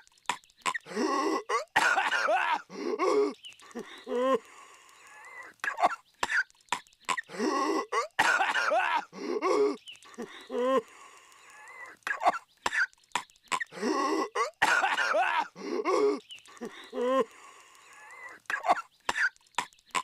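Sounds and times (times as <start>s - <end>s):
strained vocal gasps: 0.7s - 6.5s, 7.2s - 19.4s
cartoon violent coughing: 0.8s - 4.5s, 5.6s - 6.5s, 7.1s - 10.9s, 12.0s - 12.9s, 13.5s - 17.4s, 18.2s - 19.3s.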